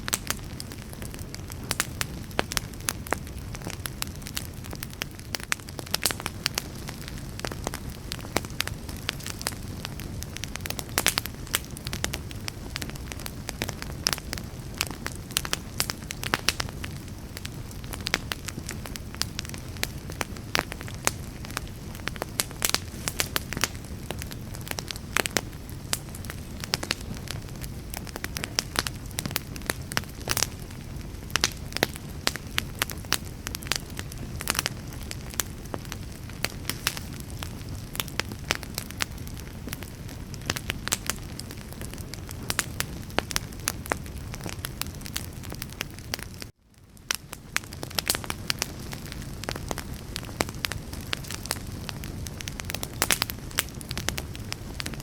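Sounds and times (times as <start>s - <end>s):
wood fire crackling and popping: 0.0s - 55.0s.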